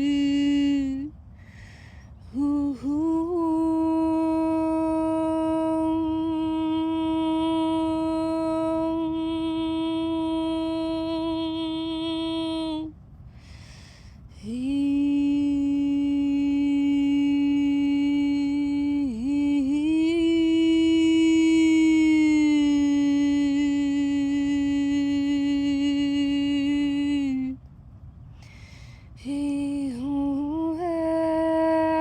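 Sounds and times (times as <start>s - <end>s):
woman humming long notes: 2.4s - 12.9s.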